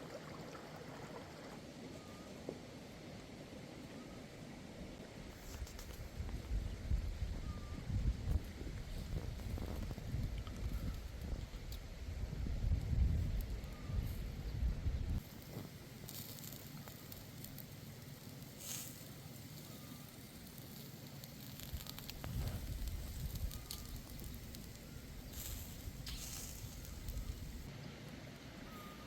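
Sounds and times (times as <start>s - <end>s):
fire hissing flare-ups: 15.2s - 27.7s
wood fire crackling and popping: 15.2s - 27.7s.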